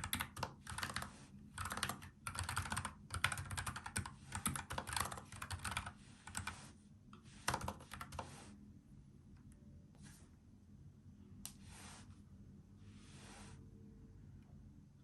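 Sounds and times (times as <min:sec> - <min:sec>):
mechanical keyboard typing: 0:00.0 - 0:06.6, 0:07.4 - 0:08.3.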